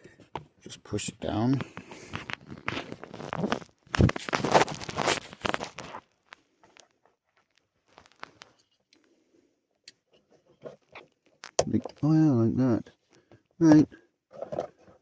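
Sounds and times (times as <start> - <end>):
rustling and scraping plastic: 1.2 - 9.2, 10.2 - 12.2, 14.3 - 15.0.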